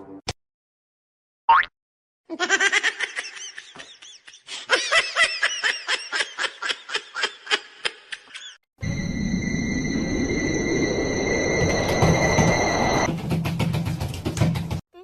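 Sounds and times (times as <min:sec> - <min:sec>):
rising squeak: 0:08.8 - 0:13.1.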